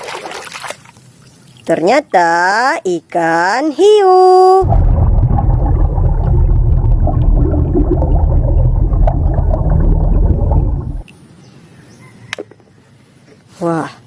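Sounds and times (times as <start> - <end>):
gurgling rumbling water: 4.6 - 11.0.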